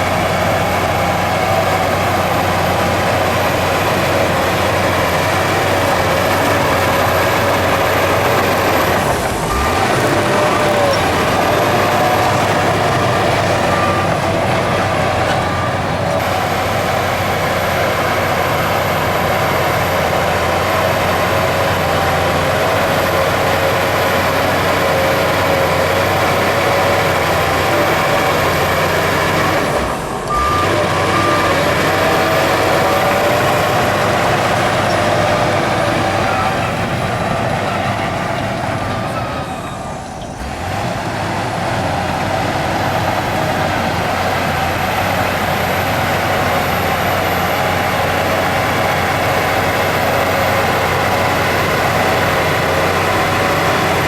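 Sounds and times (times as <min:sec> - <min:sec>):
heavy diesel machinery running: 0:00.0 - 0:54.0
reversing alarm beeping: 0:00.2 - 0:16.9, 0:28.3 - 0:40.4.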